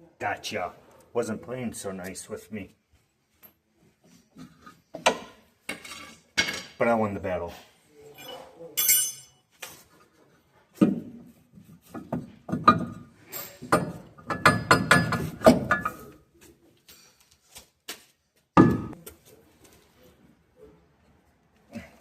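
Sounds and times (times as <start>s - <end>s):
metal tools clanking: 8.1s - 9.4s, 12.7s - 16.1s.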